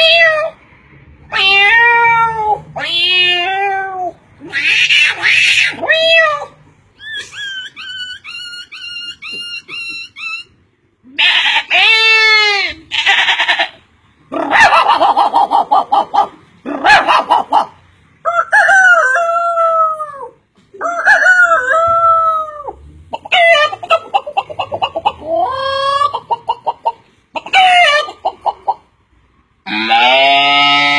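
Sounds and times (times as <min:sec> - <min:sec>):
chickens clucking: 0:14.4 - 0:19.3, 0:20.8 - 0:29.0
rooster crowing: 0:18.2 - 0:20.0.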